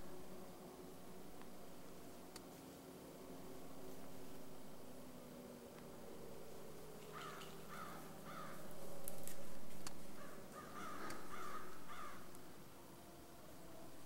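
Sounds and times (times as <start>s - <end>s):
faint low hum: 0.0s - 14.0s
harsh bird calls: 7.0s - 8.7s, 10.2s - 12.3s.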